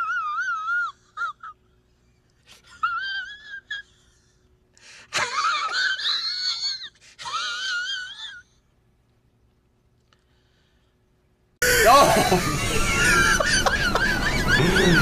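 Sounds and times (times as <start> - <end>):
squeaky wheezing laugh: 11.6 - 15.0.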